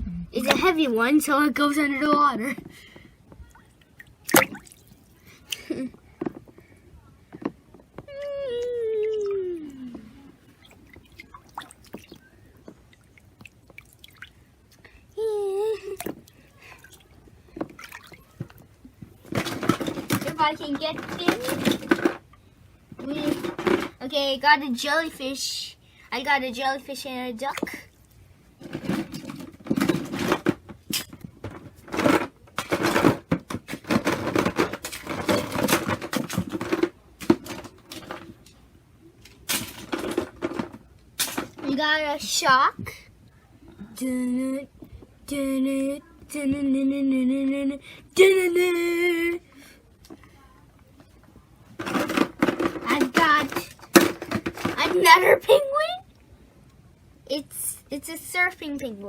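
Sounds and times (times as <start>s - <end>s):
water splashing and dripping: 3.9s - 5.1s, 10.6s - 14.4s
hands splashing in bath water: 4.2s - 5.6s
wavering high vocal sound: 8.1s - 10.3s
plastic bath toys knocking: 17.6s - 22.3s, 23.0s - 24.0s, 28.6s - 38.4s, 39.5s - 41.8s, 51.8s - 55.5s.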